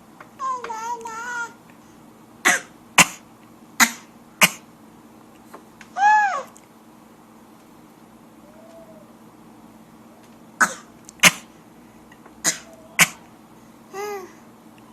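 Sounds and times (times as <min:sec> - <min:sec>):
people coughing: 0:10.6 - 0:11.4, 0:12.4 - 0:13.3.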